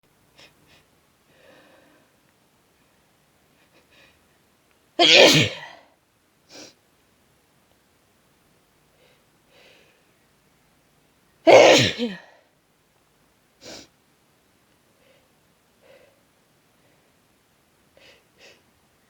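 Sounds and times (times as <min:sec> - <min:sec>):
person sneezing: 0:05.0 - 0:05.8, 0:11.5 - 0:12.3.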